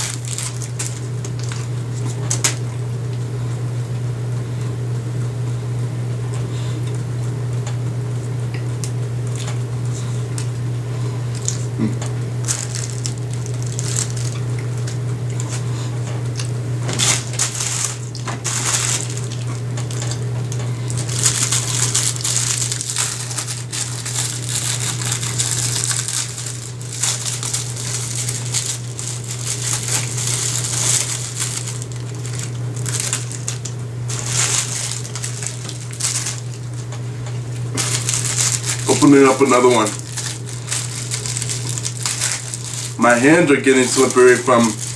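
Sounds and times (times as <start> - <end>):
plastic wrapper crinkling: 0.0 - 2.6, 11.3 - 11.7, 12.4 - 15.6, 16.8 - 44.9
steady low hum: 0.0 - 44.9.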